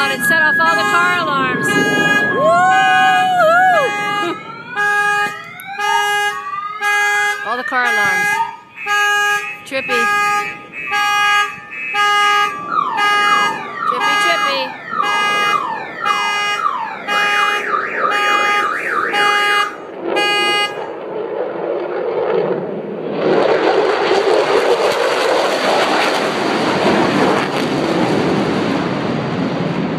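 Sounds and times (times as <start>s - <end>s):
jet engine roar: 0.0s - 6.9s, 7.5s - 29.9s
car alarms beeping and whooping: 0.0s - 20.9s.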